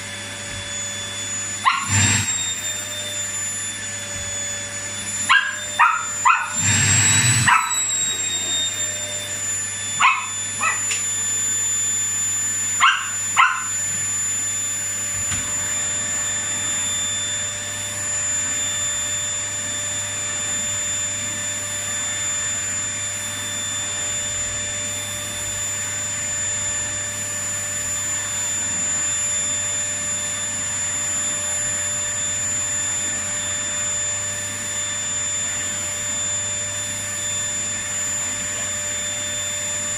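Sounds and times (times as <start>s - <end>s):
vacuum cleaner whining: 0.0s - 39.9s
small dog barking: 1.6s - 1.9s, 5.3s - 6.6s, 7.5s - 7.8s, 10.0s - 10.9s, 12.8s - 13.8s.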